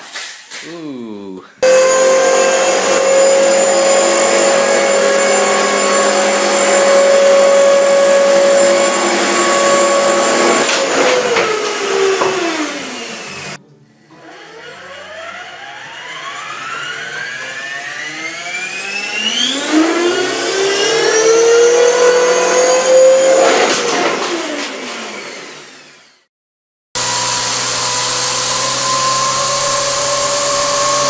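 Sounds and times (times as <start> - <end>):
blades scraping: 1.6 - 13.6.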